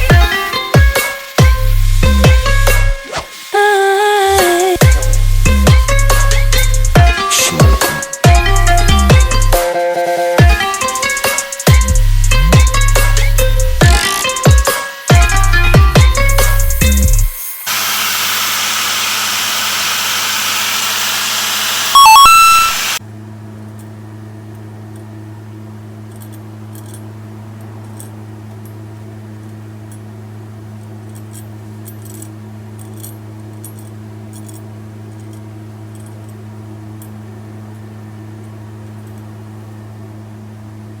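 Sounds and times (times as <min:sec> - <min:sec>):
loud burst of noise: 0:16.6 - 0:23.0
low electrical hum: 0:22.3 - 0:41.0.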